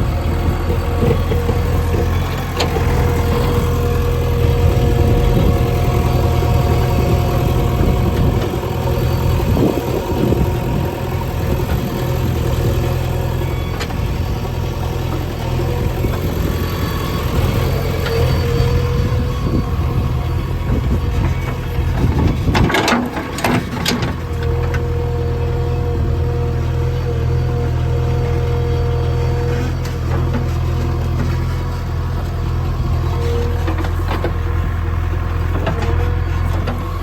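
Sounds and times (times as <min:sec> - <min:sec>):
diesel engine running: 0:00.0 - 0:37.0.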